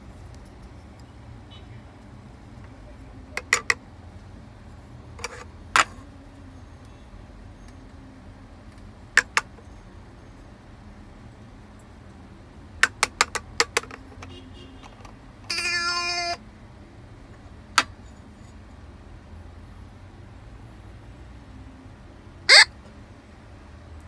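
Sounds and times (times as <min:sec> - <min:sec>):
plastic toy pieces clicking: 0:03.4 - 0:03.8, 0:05.2 - 0:05.9, 0:09.2 - 0:09.5, 0:12.8 - 0:14.3
toy electronic sound effect: 0:15.5 - 0:16.4, 0:22.5 - 0:22.7.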